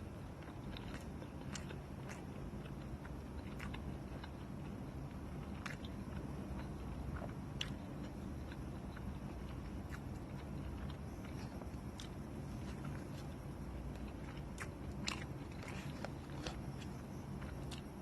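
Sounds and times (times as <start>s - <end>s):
steady low hum: 0.0s - 18.0s
person chewing food: 0.2s - 18.0s.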